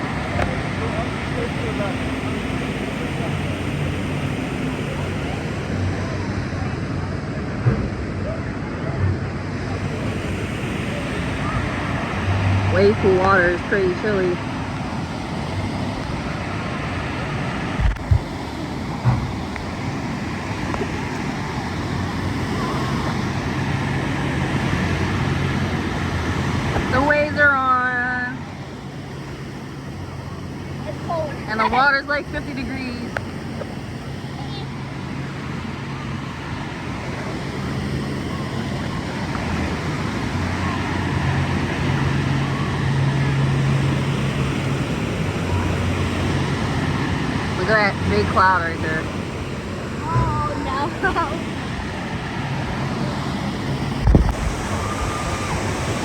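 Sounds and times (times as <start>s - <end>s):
murmur of distant voices: 0.0s - 56.0s
water rushing: 0.0s - 56.0s
wind on microphone: 4.3s - 27.5s, 34.8s - 56.0s.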